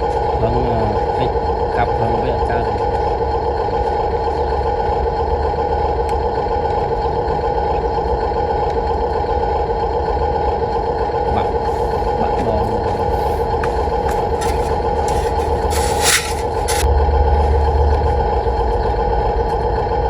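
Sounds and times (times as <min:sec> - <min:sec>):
small electric motors whining: 0:11.5 - 0:16.8.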